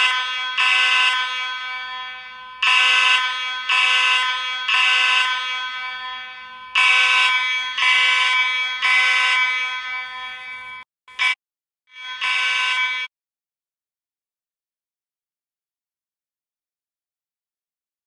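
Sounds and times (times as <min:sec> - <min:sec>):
fire alarm horn blasts: 0:00.0 - 0:13.1.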